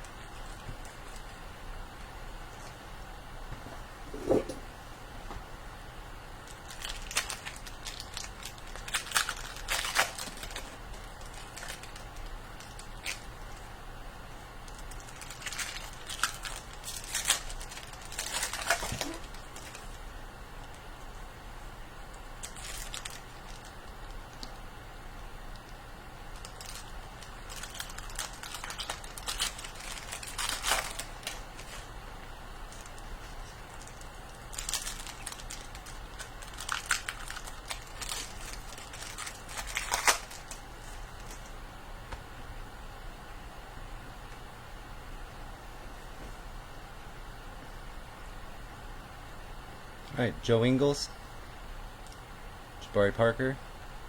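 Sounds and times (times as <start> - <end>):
card pack wrappers crinkling: 0.0 - 1.4, 6.4 - 13.7, 14.6 - 20.0, 22.3 - 24.6, 25.5 - 32.0, 32.7 - 41.5.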